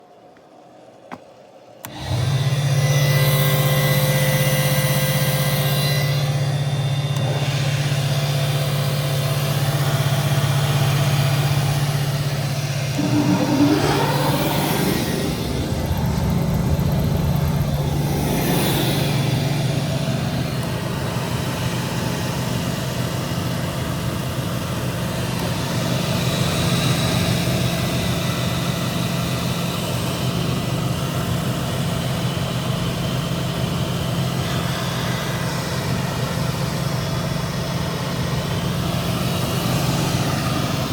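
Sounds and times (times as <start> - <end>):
machine motor hum: 1.8 - 21.7
spinning shafts whirring: 11.2 - 20.8.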